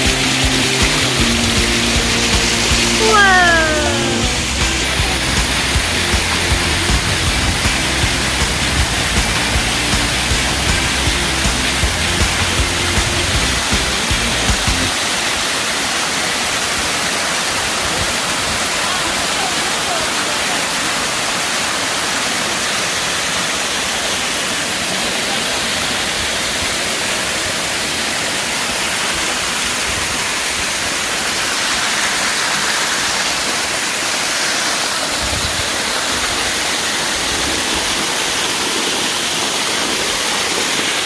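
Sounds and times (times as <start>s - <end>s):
waterfall rushing: 0.0s - 41.0s.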